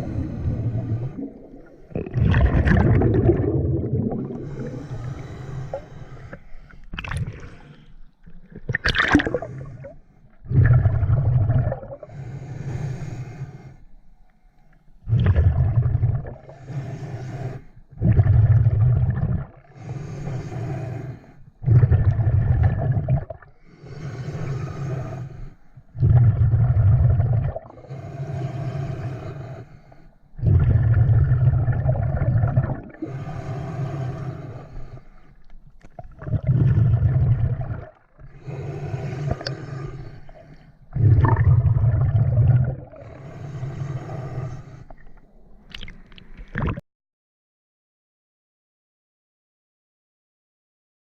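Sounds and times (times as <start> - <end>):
rumble of exhaled bubbles: 0.0 - 12.2, 15.0 - 16.6, 18.0 - 19.7, 21.6 - 23.6, 26.0 - 27.9, 30.4 - 33.2, 35.5 - 38.5, 39.1 - 46.8
regulator inhale hiss: 4.4 - 6.9, 12.1 - 15.0, 16.5 - 17.9, 19.8 - 21.5, 23.6 - 25.8, 27.8 - 30.2, 33.0 - 35.5, 38.3 - 40.8, 43.0 - 45.1.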